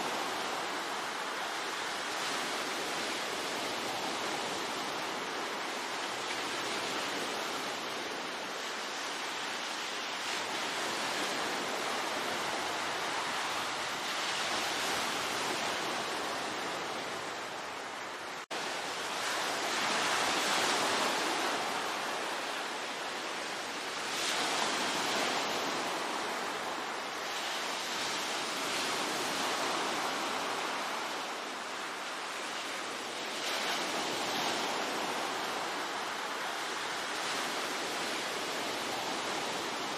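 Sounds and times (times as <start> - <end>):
sea waves breaking on shore: 0.0 - 39.9.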